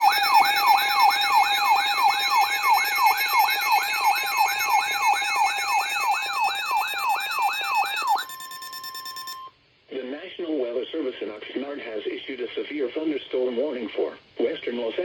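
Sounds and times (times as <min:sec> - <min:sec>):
electronic siren sweeping: 0:00.0 - 0:09.5.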